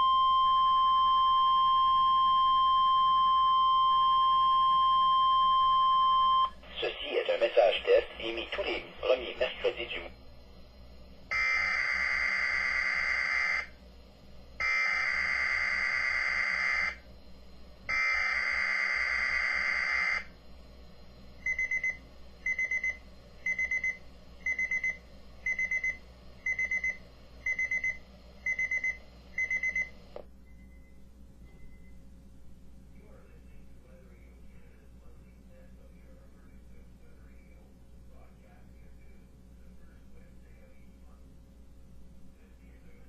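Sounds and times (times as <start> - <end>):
electronic alarm beeping: 0.0 - 6.6, 21.4 - 32.0.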